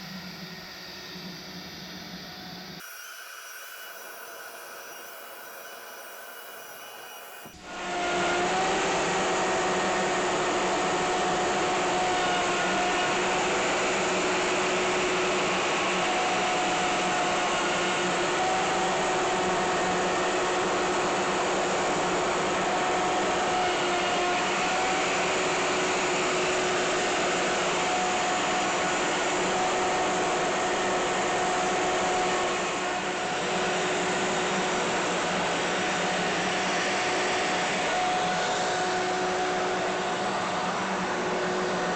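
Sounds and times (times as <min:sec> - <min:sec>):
router whining: 0:00.1 - 0:09.9.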